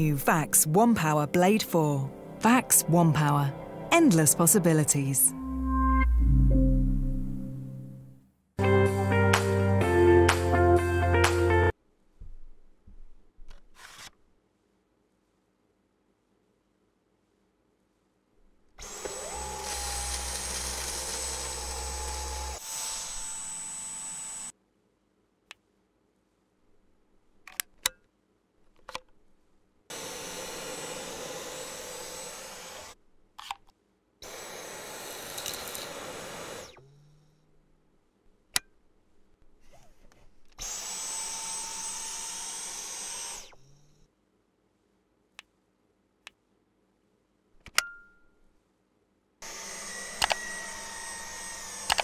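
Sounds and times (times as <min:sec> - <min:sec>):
vacuum cleaner motor whine: 0:18.8 - 0:24.5, 0:29.9 - 0:33.0, 0:34.2 - 0:36.9, 0:40.6 - 0:43.7, 0:49.4 - 0:52.0.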